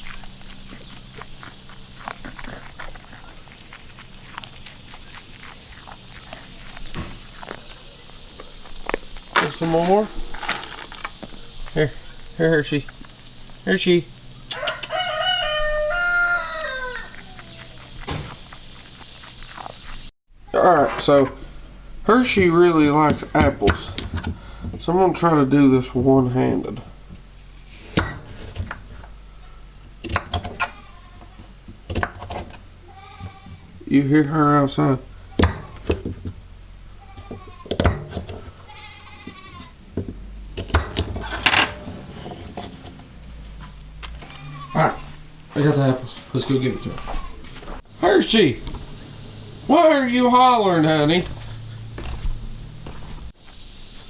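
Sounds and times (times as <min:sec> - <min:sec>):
rooster crowing: 0:14.3 - 0:18.5, 0:43.0 - 0:47.7
goat bleating: 0:14.6 - 0:19.0, 0:30.6 - 0:31.5, 0:32.8 - 0:36.0, 0:36.8 - 0:39.9, 0:43.0 - 0:47.8
kitchen utensils and dishes clattering: 0:40.7 - 0:43.2.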